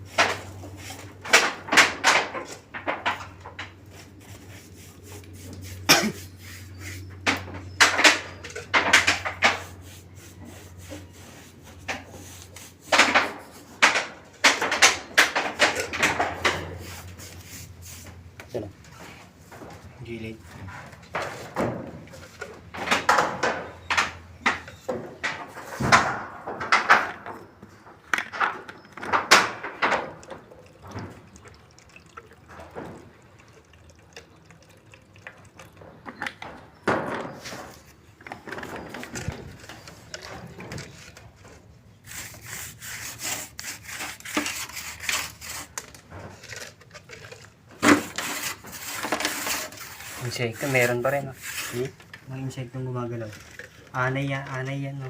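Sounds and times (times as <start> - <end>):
knocks and clatter on wood: 0.1 - 3.9, 7.2 - 9.8, 12.8 - 16.9, 20.5 - 31.4, 35.8 - 41.6
scraping on wooden surface: 37.0 - 52.2.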